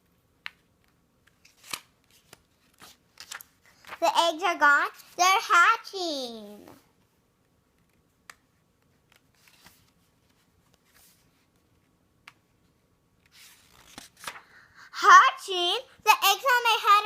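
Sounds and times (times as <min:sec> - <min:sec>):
page turning: 0:00.4 - 0:04.0, 0:07.8 - 0:12.4, 0:13.2 - 0:14.5.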